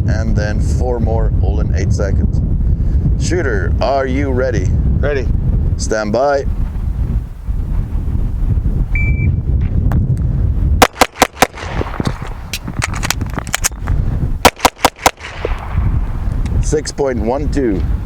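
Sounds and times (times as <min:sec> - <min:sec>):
wind rumble on microphone: 0:00.0 - 0:18.0
shot timer beep: 0:09.0 - 0:09.4
pistol shots: 0:10.8 - 0:13.8, 0:14.4 - 0:16.1.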